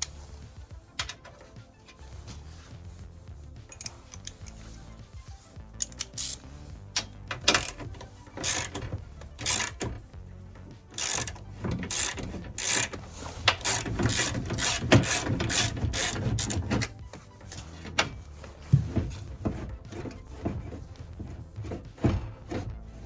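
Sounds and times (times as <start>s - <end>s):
ratchet wrench clicking: 3.7s - 4.6s, 5.8s - 10.0s, 10.9s - 17.9s.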